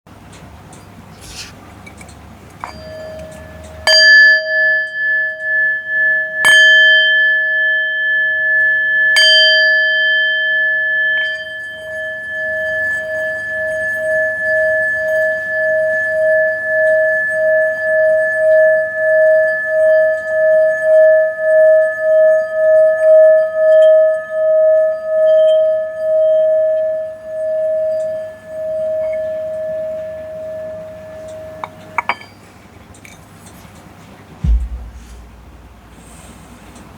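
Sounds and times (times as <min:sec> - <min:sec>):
singing bowl ringing: 0:02.6 - 0:32.4.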